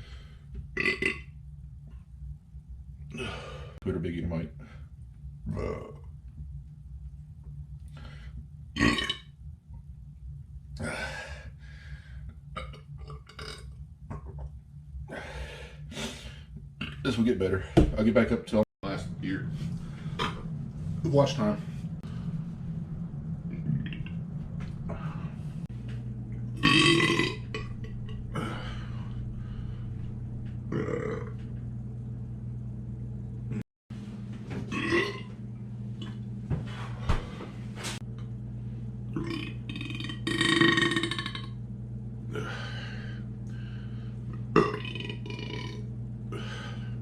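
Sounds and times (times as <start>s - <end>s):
man belching: 0.8s - 1.2s, 5.5s - 6.1s, 8.8s - 9.2s, 26.6s - 28.6s, 30.7s - 31.4s, 39.2s - 41.5s, 44.5s - 45.8s.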